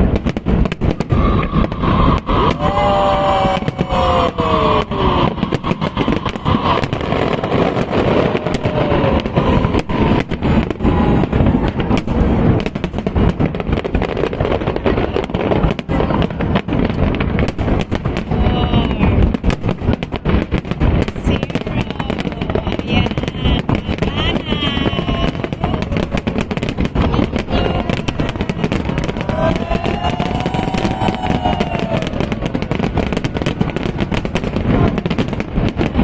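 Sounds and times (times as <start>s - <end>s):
fireworks bangs and crackling: 0.0s - 36.0s
falling firework whistles: 0.6s - 11.0s, 25.2s - 35.8s.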